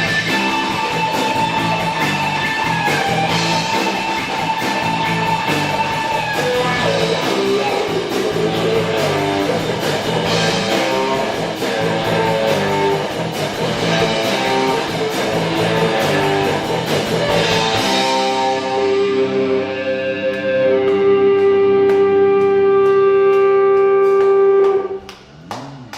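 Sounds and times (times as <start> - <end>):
drums with cymbal beat: 0.0 - 19.3
guitar: 0.0 - 25.9
walking bass line: 0.0 - 25.9.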